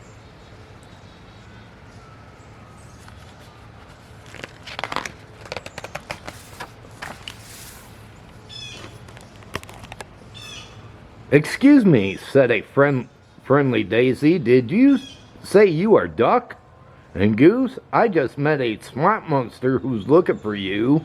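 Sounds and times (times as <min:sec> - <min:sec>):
bird chirping: 0:00.0 - 0:04.2, 0:08.0 - 0:11.0, 0:14.7 - 0:15.4
rustling and clicking noises: 0:02.9 - 0:10.2.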